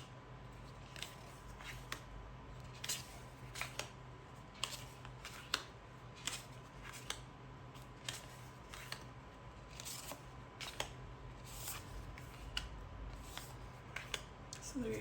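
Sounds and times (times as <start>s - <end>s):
cards sliding rustle: 0.5s - 14.6s
cards snapping and tapping: 2.8s - 4.0s, 4.6s - 7.3s, 9.7s - 11.0s, 12.2s - 14.6s.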